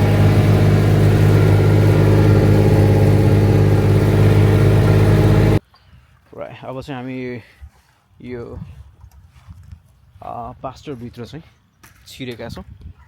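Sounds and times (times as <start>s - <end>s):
farm vehicle engine humming: 0.0s - 5.6s.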